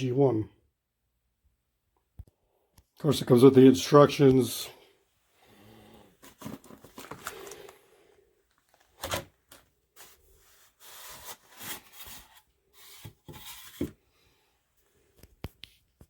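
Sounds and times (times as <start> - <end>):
cardboard rustling and scraping: 6.2 - 7.8, 8.5 - 14.0.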